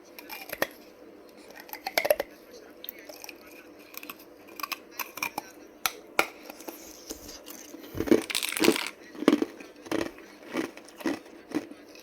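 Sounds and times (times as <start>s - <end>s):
ice crunching in mouth: 7.3s - 12.0s.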